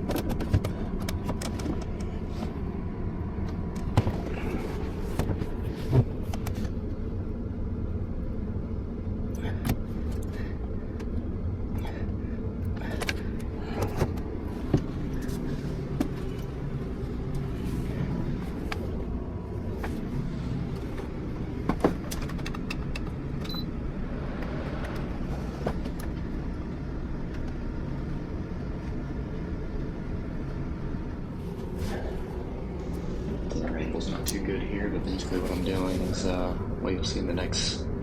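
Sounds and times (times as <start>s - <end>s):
steady low drone: 0.0s - 38.0s
sharp clicks and knocks: 21.6s - 23.2s.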